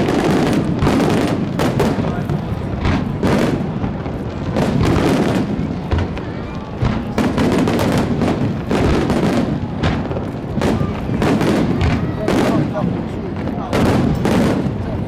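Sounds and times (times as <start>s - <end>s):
fireworks booming and cracking: 0.0s - 15.0s.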